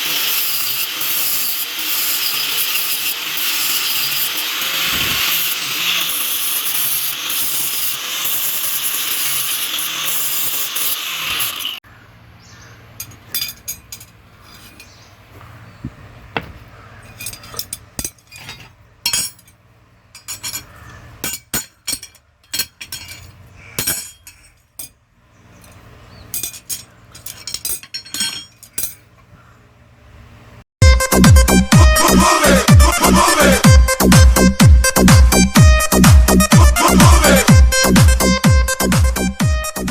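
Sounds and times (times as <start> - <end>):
power tool grinding metal: 0.0 - 11.8
metal tools clinking: 13.0 - 15.0, 17.0 - 25.0, 25.6 - 29.3.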